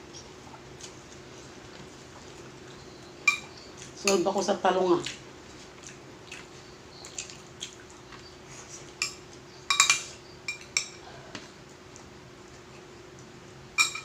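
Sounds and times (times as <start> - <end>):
faint steady hum: 0.0 - 14.0
cutlery clinking on plates: 9.0 - 11.0, 13.8 - 14.0.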